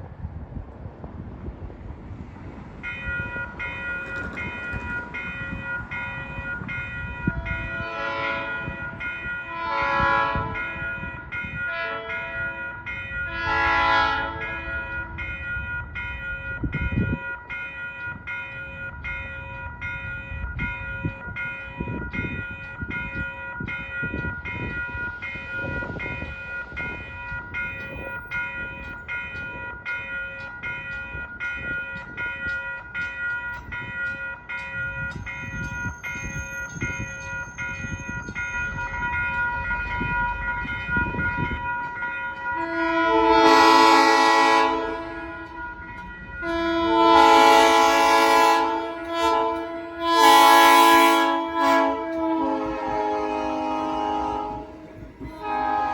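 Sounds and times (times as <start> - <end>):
electric train rumbling: 0.0 - 55.9
crossing bell ringing: 2.8 - 55.9
train horn blasts: 7.3 - 11.0, 11.6 - 12.6, 13.2 - 15.2, 42.5 - 45.8, 46.4 - 55.9.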